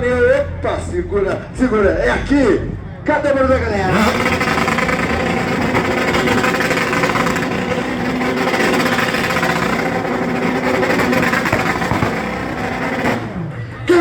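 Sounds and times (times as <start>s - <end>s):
motorcycle engine revving high: 3.3s - 14.0s.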